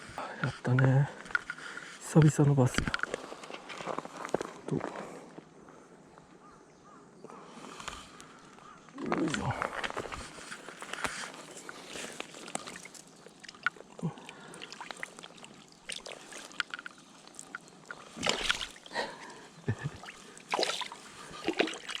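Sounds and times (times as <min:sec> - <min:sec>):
water splashing and sloshing: 0:09.8 - 0:22.0.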